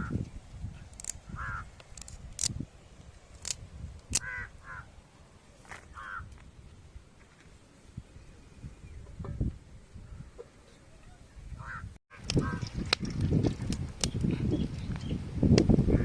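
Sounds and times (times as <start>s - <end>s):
crows cawing: 1.3s - 1.7s, 4.2s - 4.9s, 5.9s - 6.3s, 11.6s - 12.7s.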